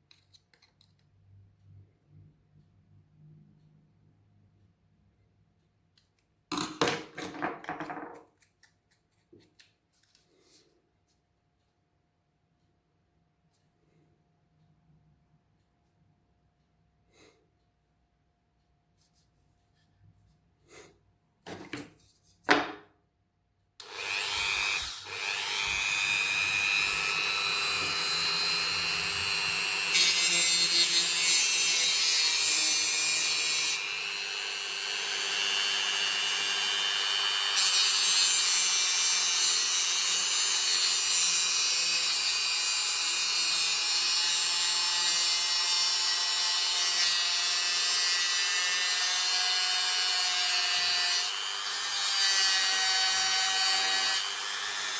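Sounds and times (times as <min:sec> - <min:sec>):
rotary tool grinding: 0:23.8 - 0:31.2.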